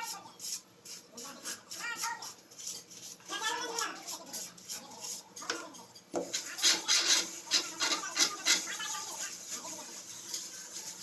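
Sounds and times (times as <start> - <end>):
plastering float scraping plaster: 6.2 - 11.0.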